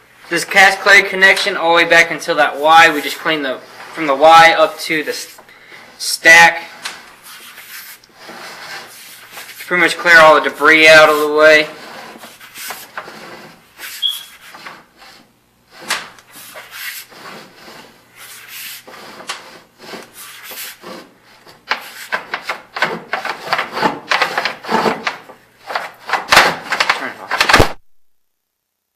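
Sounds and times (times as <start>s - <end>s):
cable scraping through pipe: 6.0s - 22.0s.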